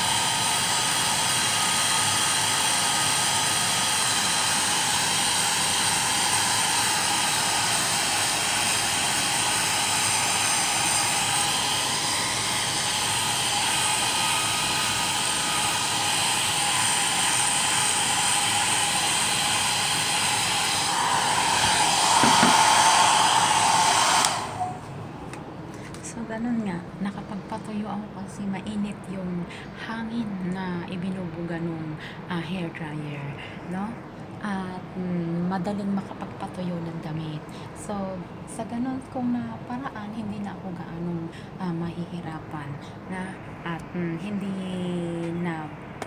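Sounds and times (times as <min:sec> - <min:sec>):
hair dryer running: 0:00.0 - 0:25.0.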